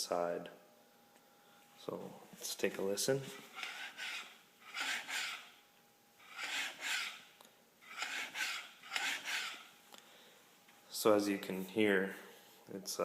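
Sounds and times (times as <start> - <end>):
metal grinding scrape in fork: 3.5 - 5.5, 6.2 - 7.2, 7.9 - 9.7.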